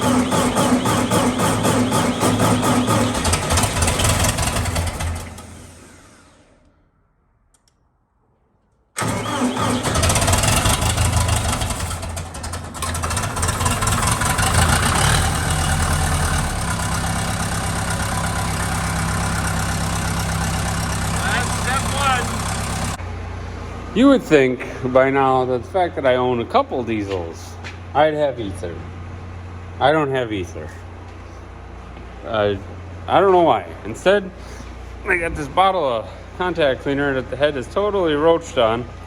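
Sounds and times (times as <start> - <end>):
petrol engine starting and idling: 0.0 - 6.9, 9.0 - 26.2.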